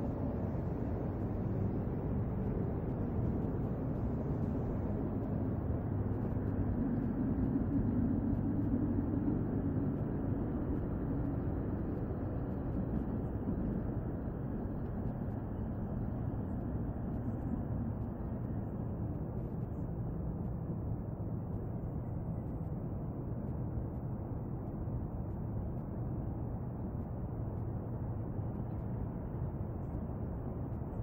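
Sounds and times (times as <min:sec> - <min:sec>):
low outdoor rumble: 0:00.0 - 0:31.0.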